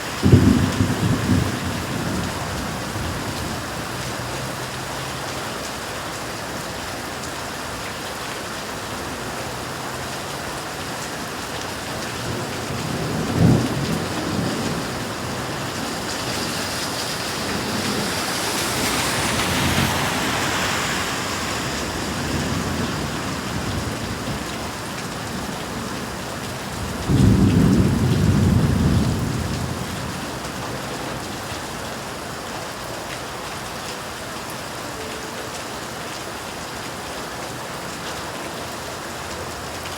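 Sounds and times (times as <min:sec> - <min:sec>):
thunder rumbling: 0:00.0 - 0:03.9, 0:12.1 - 0:31.7
steady rain: 0:00.0 - 0:39.9.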